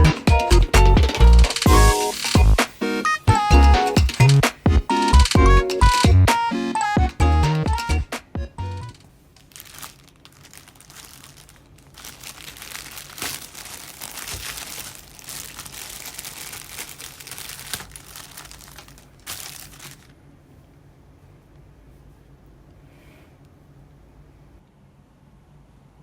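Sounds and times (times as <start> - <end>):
packaging crinkling: 8.8 - 20.2.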